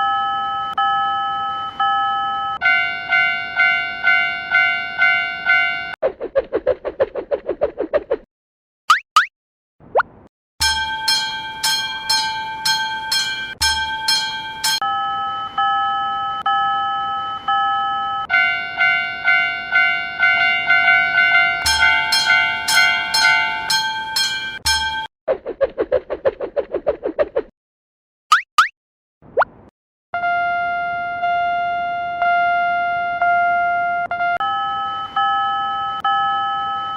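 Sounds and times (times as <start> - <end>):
level-crossing warning bells: 0.0 - 6.0, 10.6 - 25.1, 33.2 - 36.9.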